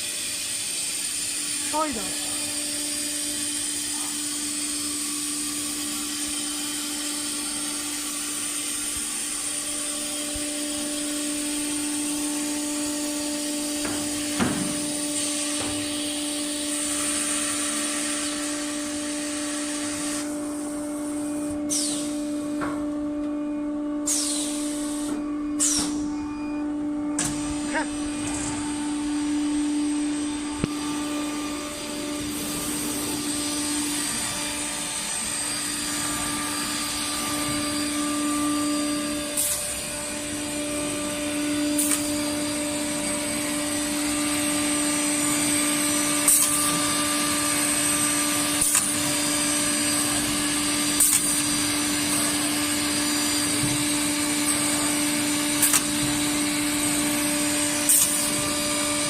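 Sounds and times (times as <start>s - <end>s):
router spindle tone: 0.2s - 59.0s.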